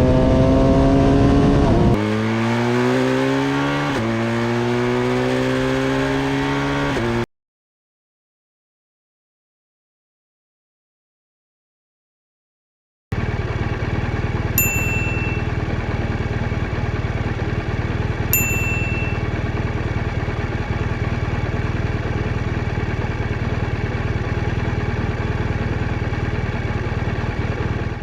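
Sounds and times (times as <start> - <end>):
motorcycle engine running: 0.0 - 7.2, 13.1 - 28.0
short bright pings: 14.6 - 15.6, 18.3 - 19.4.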